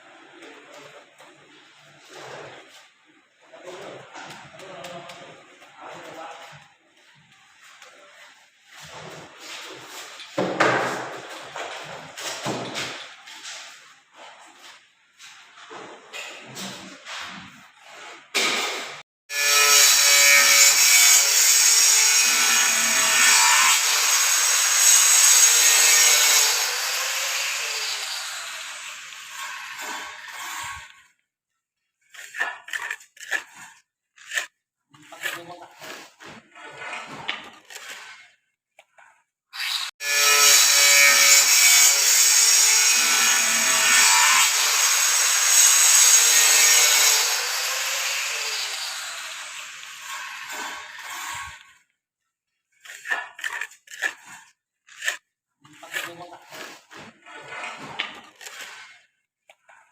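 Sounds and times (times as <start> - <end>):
power tool grinding: 19.3 - 31.1, 32.0 - 38.9, 39.6 - 51.8, 52.7 - 59.8.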